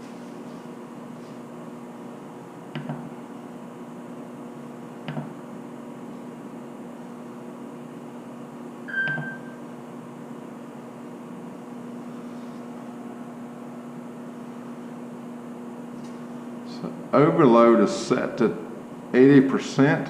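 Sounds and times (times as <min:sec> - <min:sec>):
steady electrical hum: 0:00.0 - 0:20.0
short electronic beep: 0:08.9 - 0:09.6.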